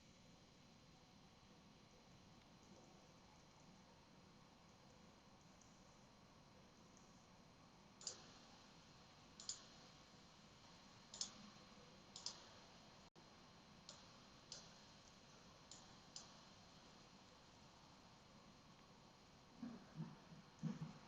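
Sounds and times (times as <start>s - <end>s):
faint room hiss: 0.0s - 21.0s
computer mouse clicking: 8.0s - 8.4s, 9.4s - 9.8s, 11.1s - 12.6s, 13.8s - 16.6s.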